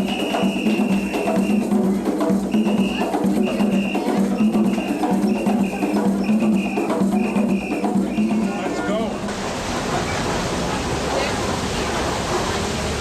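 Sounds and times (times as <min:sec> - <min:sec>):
music with wooden hand percussion: 0:00.0 - 0:09.3.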